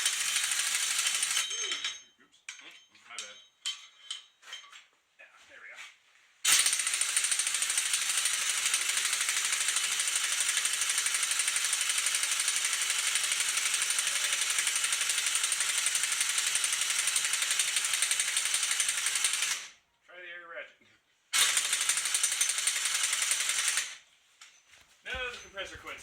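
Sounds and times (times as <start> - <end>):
pneumatic wrench rattling: 0.0 - 1.9, 6.5 - 19.7, 21.4 - 24.0.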